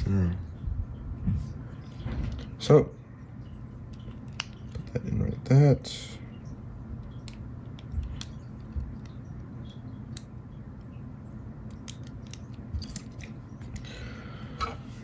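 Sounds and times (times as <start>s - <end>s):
low steady hum: 0.0s - 15.0s
small parts and tools clicking: 11.6s - 13.9s.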